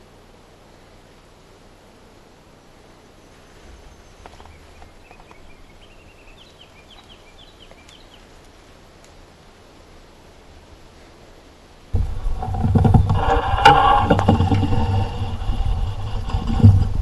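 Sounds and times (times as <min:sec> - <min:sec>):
songbird singing: 0:00.0 - 0:16.3
outdoor background hiss: 0:00.0 - 0:17.0
faint clicks: 0:04.2 - 0:05.4, 0:07.0 - 0:09.2.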